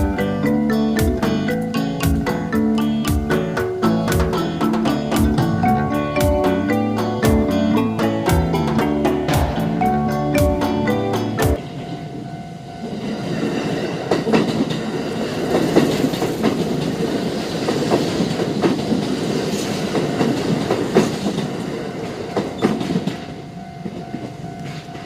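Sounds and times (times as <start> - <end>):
wheels clacking over rail joints: 0.0 - 12.0, 13.4 - 25.0
crossing warning bell ringing: 0.0 - 14.1, 21.2 - 25.0
train rumbling past: 0.0 - 25.0.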